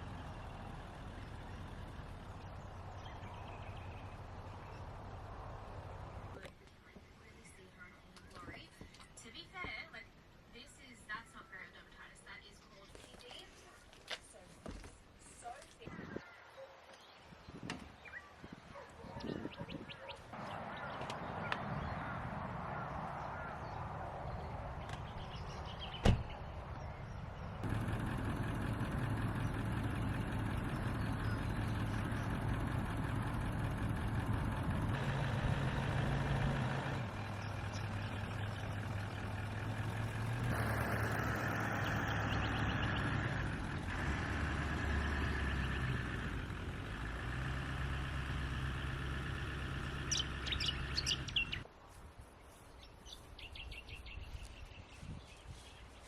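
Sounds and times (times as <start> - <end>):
bird chirps: 0.2 - 5.1, 23.3 - 27.5, 30.6 - 32.5, 41.6 - 43.4, 50.0 - 51.7.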